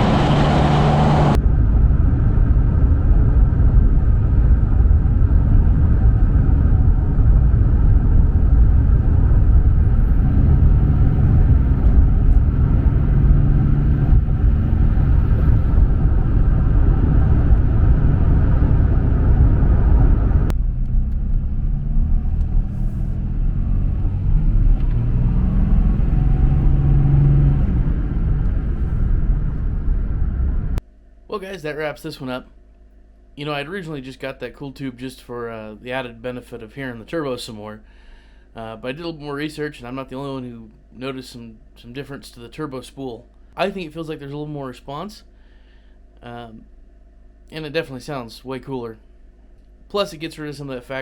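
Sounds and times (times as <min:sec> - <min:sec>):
diesel engine rumbling: 0:00.0 - 0:30.8.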